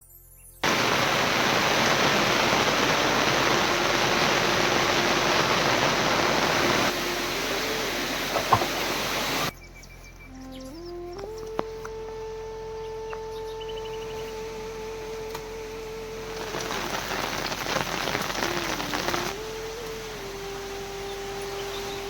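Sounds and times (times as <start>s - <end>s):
heavy rain pouring: 0.6s - 9.5s, 15.8s - 22.0s
steady tones rising in pitch: 0.6s - 9.5s, 10.3s - 22.0s.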